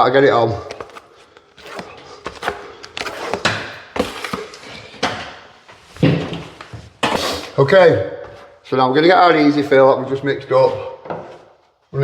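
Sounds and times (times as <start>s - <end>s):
plastering tools scraping and knocking: 0.6s - 7.6s, 9.2s - 11.8s.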